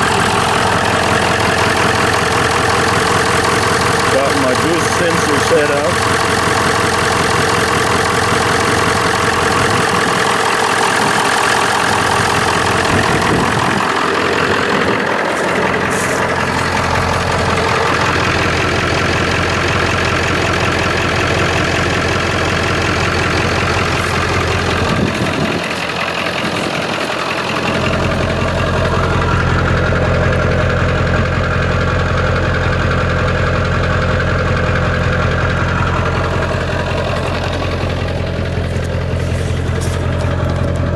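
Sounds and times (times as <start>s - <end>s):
diesel engine idling: 0.0s - 40.9s.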